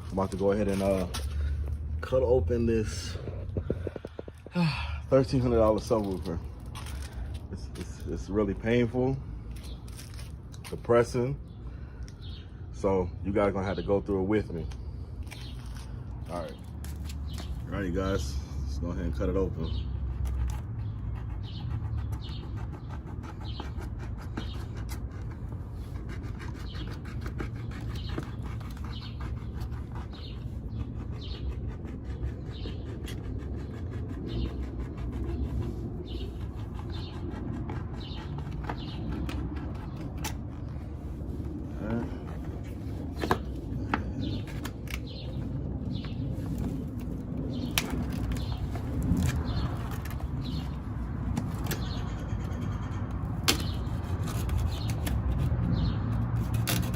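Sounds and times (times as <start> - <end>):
knife sawing through speaker cone: 0.0 - 4.0, 5.1 - 11.3, 13.4 - 56.9
steady low rumble: 0.0 - 19.2, 28.2 - 53.4.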